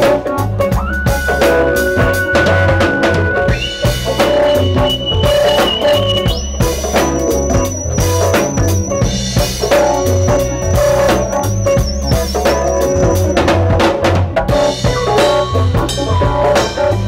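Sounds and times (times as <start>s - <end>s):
bass notes: 0.0s - 17.0s
drum kit kick and snare: 0.0s - 17.0s
live band playing: 0.0s - 17.0s.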